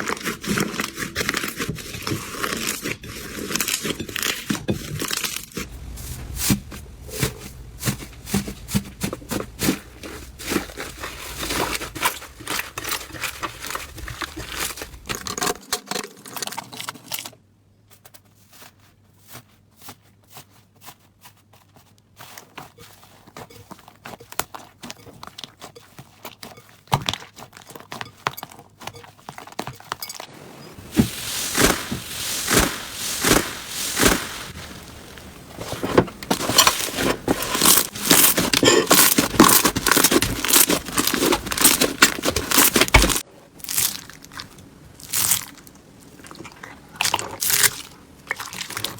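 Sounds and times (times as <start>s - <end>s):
slime popping and crackling: 30.9s - 35.4s, 36.2s - 48.9s.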